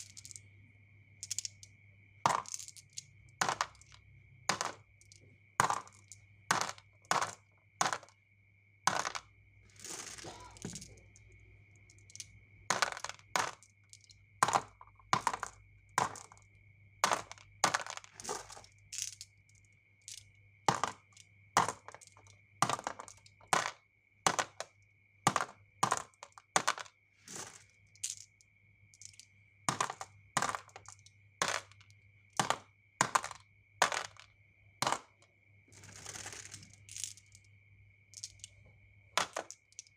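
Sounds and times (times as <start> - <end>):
toy cars rolling rattle: 2.3 - 8.1, 8.9 - 11.3, 17.1 - 19.3, 25.3 - 28.3, 35.7 - 37.5, 38.1 - 38.6.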